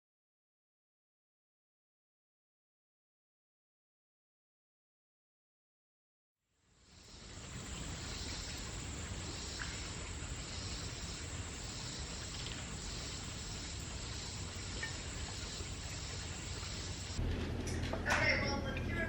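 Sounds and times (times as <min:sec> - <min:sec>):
insects singing in chorus: 0:06.9 - 0:17.2.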